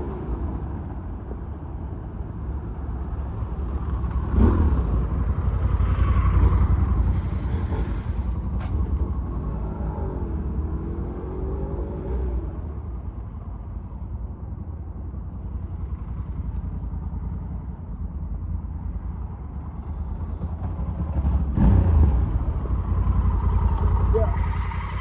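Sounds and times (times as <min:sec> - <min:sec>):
motorcycle engine: 0:20.4 - 0:25.0.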